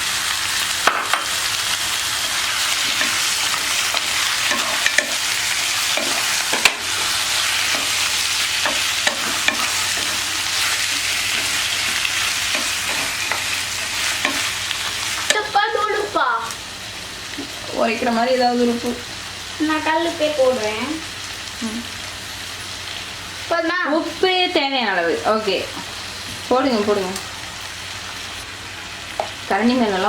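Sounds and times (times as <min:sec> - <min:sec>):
curry sizzling in a hot pan: 0:00.0 - 0:30.0
spoon scraping against pan: 0:02.6 - 0:15.4.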